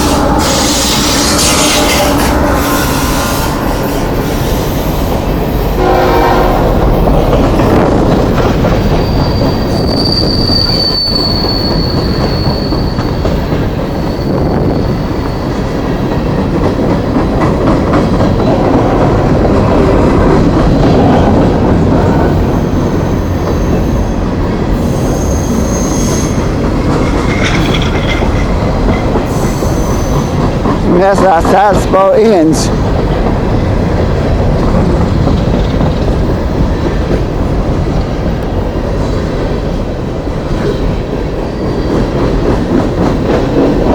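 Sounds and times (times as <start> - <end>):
train wheels rumbling on rail: 0.0 - 43.9
high wheel squeals: 8.8 - 15.7, 24.8 - 28.2, 29.3 - 30.4.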